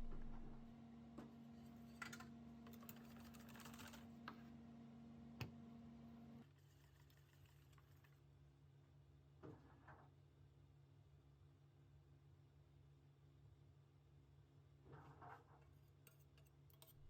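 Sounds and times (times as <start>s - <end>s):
low hum: 0.0s - 0.7s.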